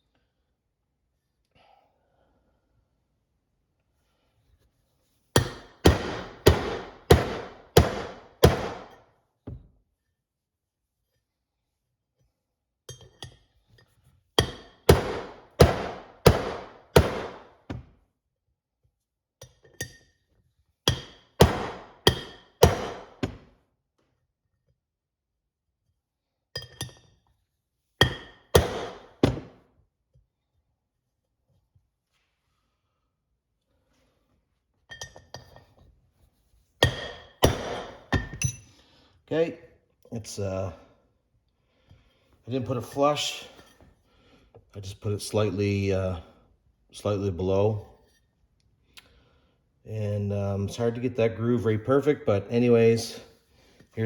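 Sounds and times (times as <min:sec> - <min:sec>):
hammer striking metal: 0:05.4 - 0:09.0, 0:14.4 - 0:17.5, 0:20.9 - 0:23.3, 0:28.0 - 0:29.4, 0:36.8 - 0:38.5.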